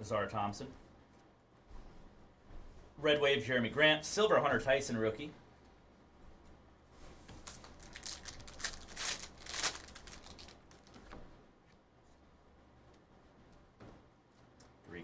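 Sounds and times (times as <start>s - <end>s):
cards rustling and sliding: 7.3s - 11.2s
foil card pack crinkling and tearing: 7.4s - 11.2s.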